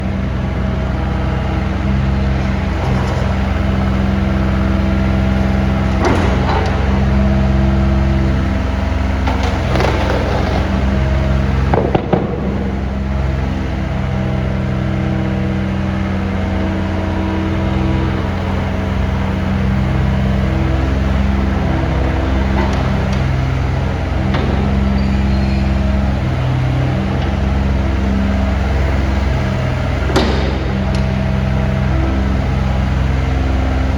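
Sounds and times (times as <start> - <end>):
excavator diesel engine running: 0.0 - 33.9
sharp metallic knocks: 29.5 - 31.6.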